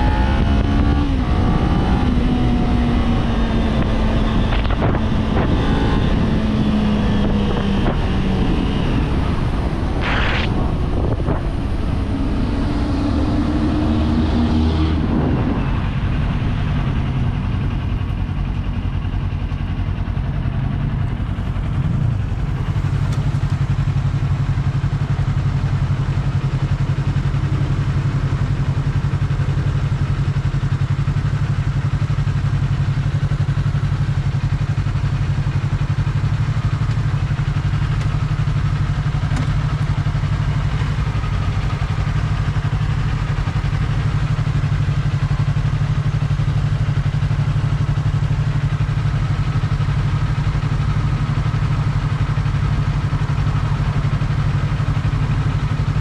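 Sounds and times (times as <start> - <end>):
motorcycle engine idling: 15.0 - 56.0.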